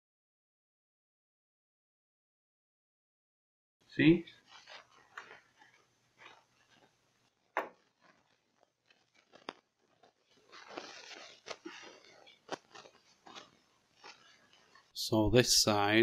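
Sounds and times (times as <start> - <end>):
short rustling scrape: 9.1 - 14.9.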